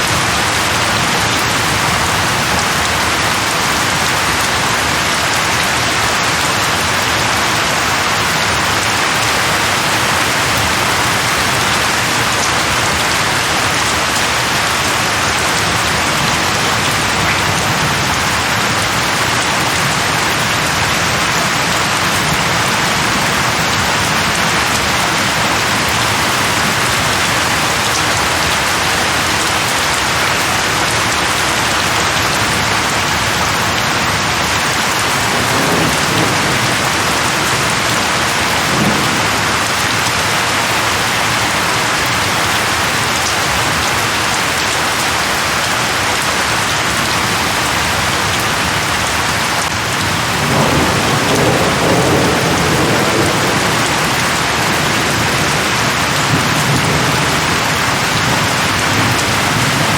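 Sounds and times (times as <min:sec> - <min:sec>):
rain falling on leaves: 0:00.0 - 0:59.9
distant thunder rumbling: 0:35.1 - 0:40.0, 0:50.1 - 0:59.9.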